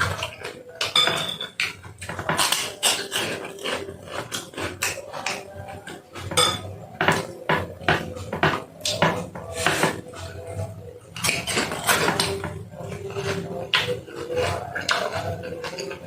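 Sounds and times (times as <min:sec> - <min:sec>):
spoon clinking against bowl: 0:00.8 - 0:01.7, 0:06.2 - 0:07.2.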